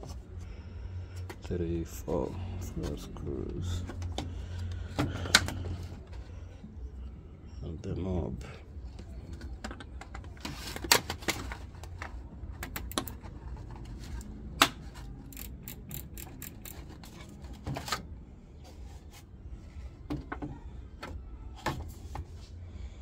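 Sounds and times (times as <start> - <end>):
hard plastic parts clicking and knocking: 3.6 - 6.3, 8.9 - 18.0.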